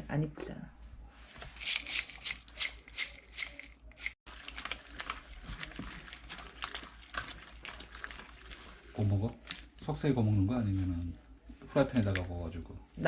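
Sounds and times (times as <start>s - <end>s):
meat marinade mixed by hand: 4.3s - 12.8s.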